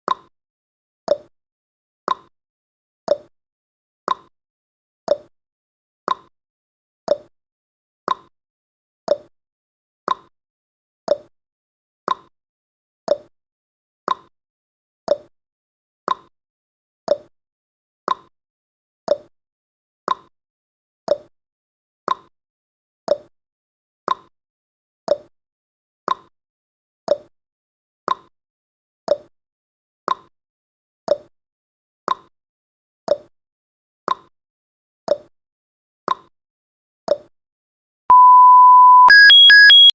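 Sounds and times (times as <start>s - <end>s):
steady electronic beep: 38.1s - 39.9s.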